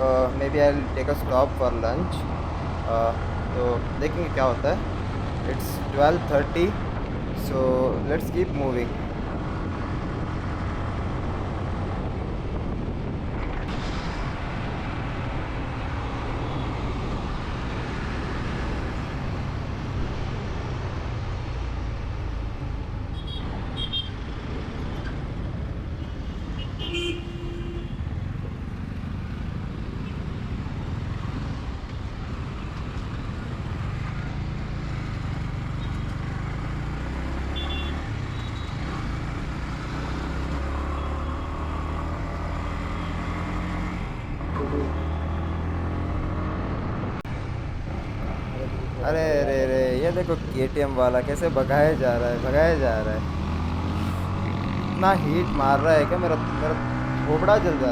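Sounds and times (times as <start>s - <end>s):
wind and road noise: 0.0s - 57.9s
vehicle horns: 23.1s - 24.2s, 26.3s - 28.0s, 37.5s - 38.8s.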